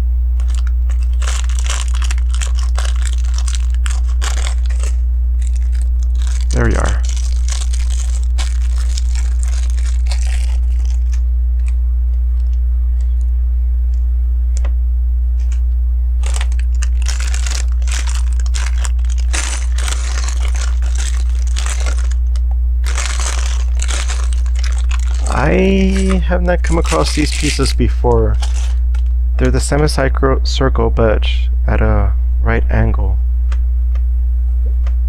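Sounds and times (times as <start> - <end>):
steady low hum: 0.0 - 35.0
plastic pieces rustling and clicking: 0.4 - 11.8, 16.2 - 29.1.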